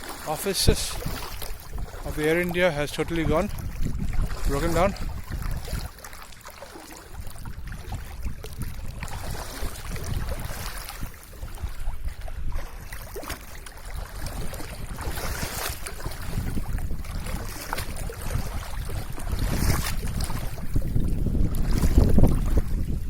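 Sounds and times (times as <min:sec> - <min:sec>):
wind gusting over microphone: 0:00.0 - 0:06.0, 0:07.1 - 0:13.2, 0:13.8 - 0:23.0.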